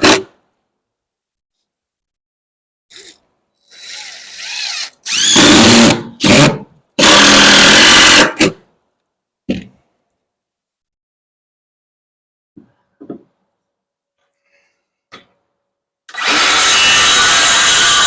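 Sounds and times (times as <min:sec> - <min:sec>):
power screw gun whining: 0:04.4 - 0:08.3, 0:16.1 - 0:18.0.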